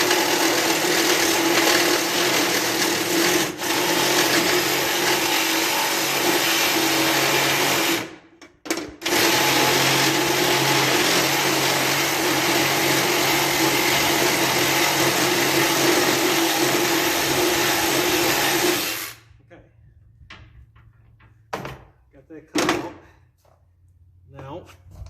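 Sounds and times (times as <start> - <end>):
power tool cutting sheet metal: 0.0 - 8.2, 9.0 - 19.2.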